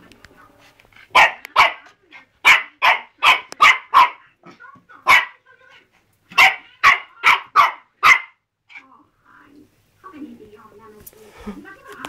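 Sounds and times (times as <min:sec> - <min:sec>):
dog barking: 0:01.1 - 0:04.3, 0:05.0 - 0:05.4, 0:06.3 - 0:08.4.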